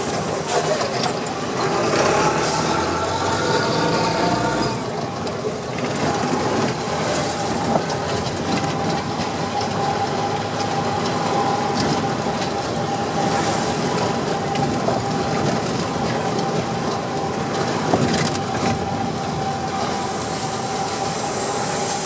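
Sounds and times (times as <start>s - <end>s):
truck diesel engine running: 0.0s - 11.7s
road and rattle noise: 0.0s - 22.0s.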